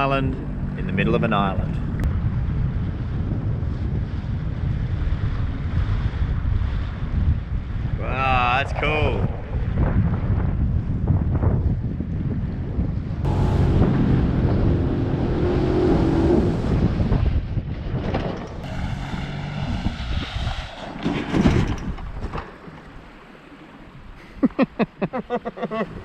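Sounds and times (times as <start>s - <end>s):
wind noise on microphone: 1.4s - 23.1s
jet ski engine running: 13.2s - 17.5s
sharp pulses: 13.3s - 17.2s.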